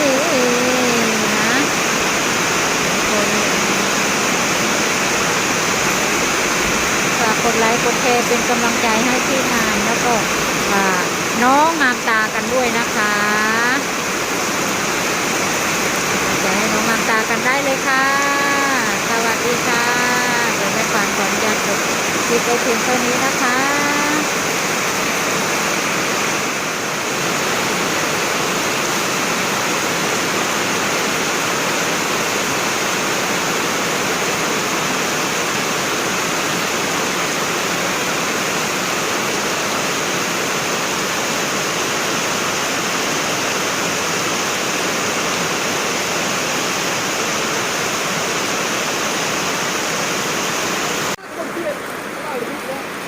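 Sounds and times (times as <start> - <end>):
heavy rain pouring: 0.0 - 53.0.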